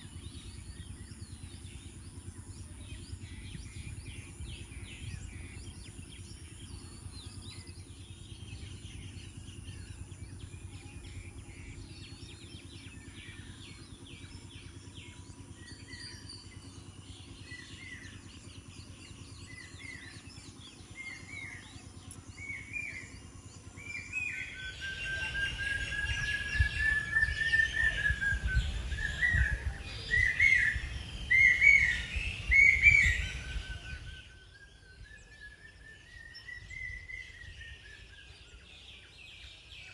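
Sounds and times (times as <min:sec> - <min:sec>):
birds chirping and calling: 0:02.6 - 0:39.9
low rumbling noise: 0:19.1 - 0:35.8
long rising whistle: 0:24.0 - 0:34.5.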